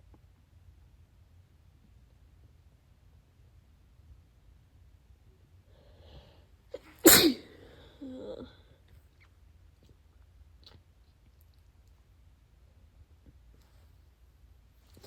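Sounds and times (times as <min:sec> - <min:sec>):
person sneezing: 0:06.8 - 0:08.5.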